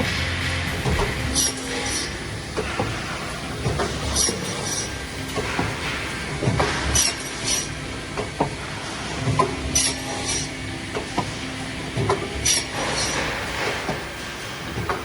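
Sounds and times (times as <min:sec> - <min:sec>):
air exhaust hisses: 0:00.0 - 0:03.4
steady mechanical noise: 0:00.0 - 0:15.0.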